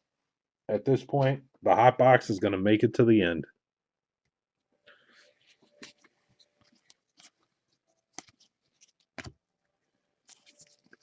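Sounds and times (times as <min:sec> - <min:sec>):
trading cards clicking and rustling: 0:05.4 - 0:09.4, 0:10.2 - 0:11.0.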